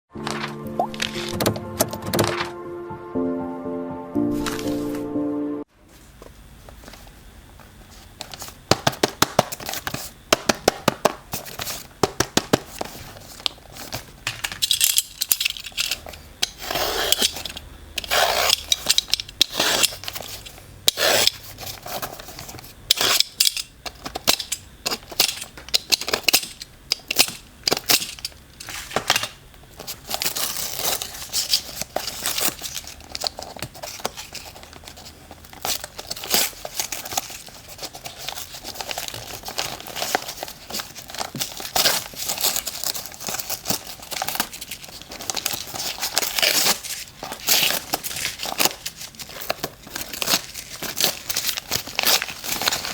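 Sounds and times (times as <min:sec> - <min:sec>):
packaging tearing and crinkling: 0:28.6 - 0:52.9.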